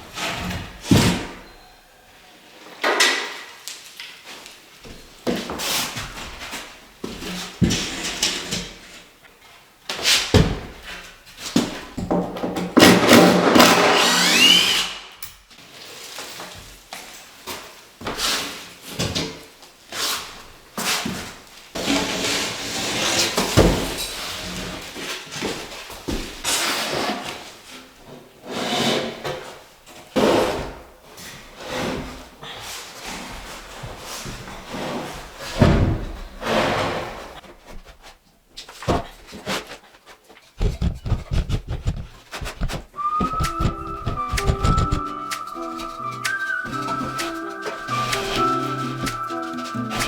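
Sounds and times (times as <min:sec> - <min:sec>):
knocks and clatter of building work: 0:04.8 - 0:09.0, 0:09.9 - 0:14.1, 0:20.8 - 0:50.0
scraping: 0:40.6 - 0:50.0.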